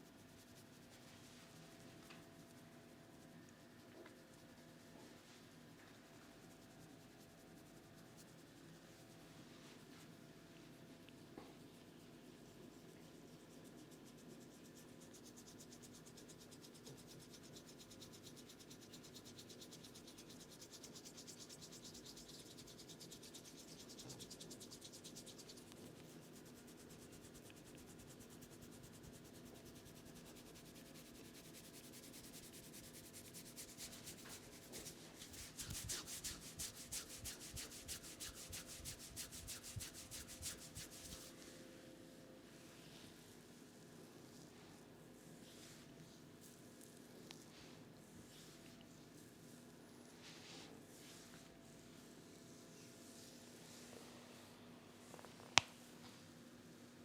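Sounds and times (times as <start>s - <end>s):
hands rubbing hair: 19.9s - 41.6s.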